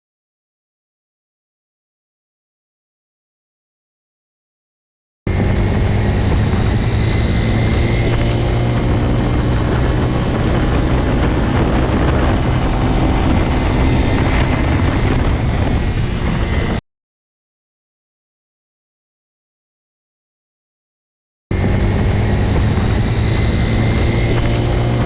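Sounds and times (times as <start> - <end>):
mechanical drone with low hum: 5.3 - 16.8, 21.5 - 25.0.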